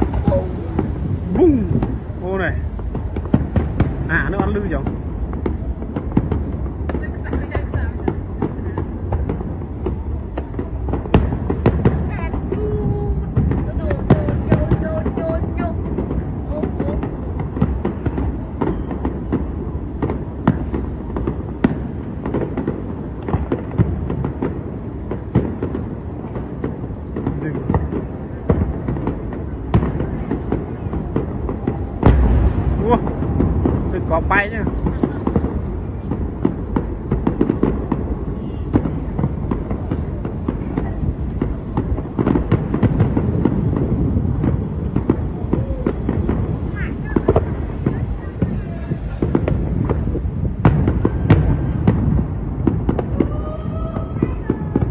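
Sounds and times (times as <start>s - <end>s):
low rumble: 0.0s - 14.2s
fireworks popping and banging: 0.0s - 54.9s.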